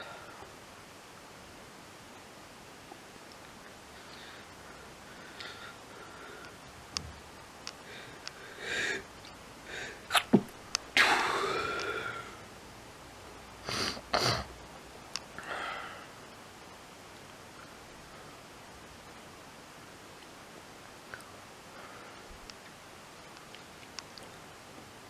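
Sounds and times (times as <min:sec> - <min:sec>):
person sneezing: 0:11.0 - 0:12.2, 0:13.7 - 0:14.5.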